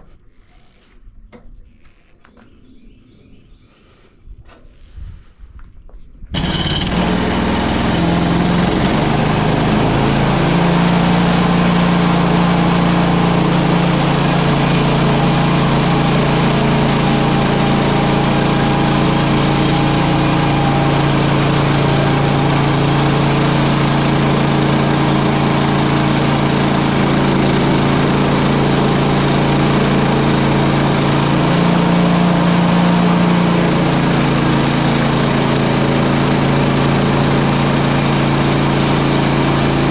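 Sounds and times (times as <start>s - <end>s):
sawmill gasoline engine revving: 6.4s - 39.9s.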